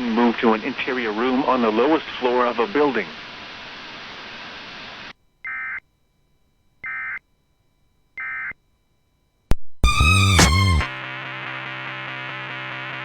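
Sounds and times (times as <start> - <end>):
radio hiss: 0.0 - 5.2
loud wavering pitched sound: 9.9 - 10.9.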